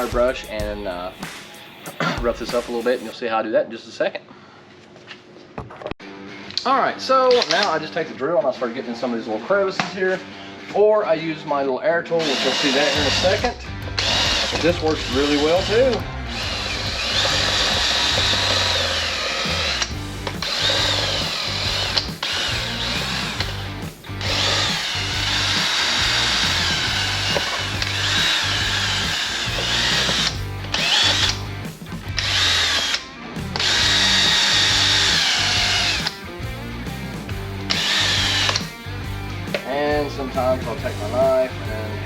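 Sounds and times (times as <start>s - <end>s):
background music: 0.0s - 3.1s, 6.0s - 42.0s
power tool scrubbing: 12.2s - 36.1s, 37.7s - 38.7s.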